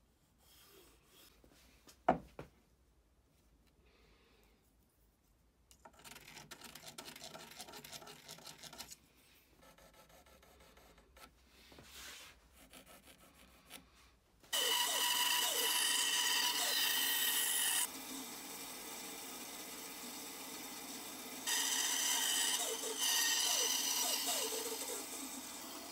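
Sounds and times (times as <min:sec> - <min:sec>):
power tool running: 0:14.5 - 0:25.9.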